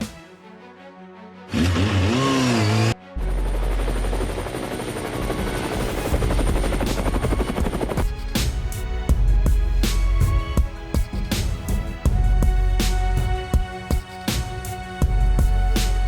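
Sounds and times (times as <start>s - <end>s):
swooping glide: 1.5s - 3.0s
helicopter rotor chop: 1.6s - 8.8s.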